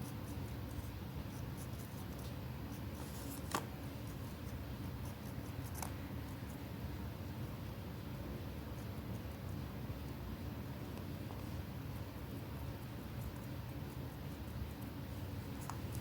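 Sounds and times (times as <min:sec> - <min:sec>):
paper rustling: 0:03.0 - 0:03.7.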